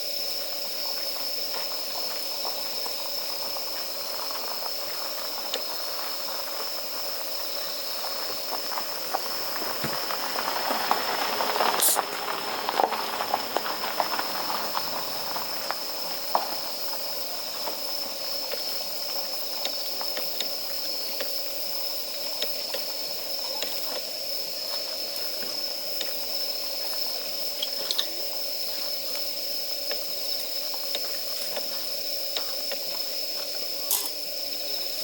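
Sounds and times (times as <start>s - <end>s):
campfire hissing: 0.0s - 35.0s
fire crackling and popping: 7.3s - 18.1s.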